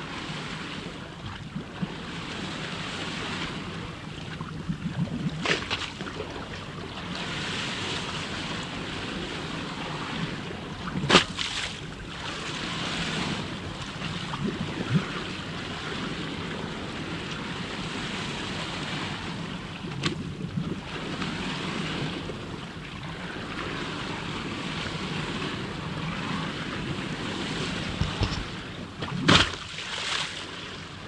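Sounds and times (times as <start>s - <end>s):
waves washing: 0.0s - 31.0s
sharp water splashes: 11.0s - 11.8s, 29.0s - 30.5s.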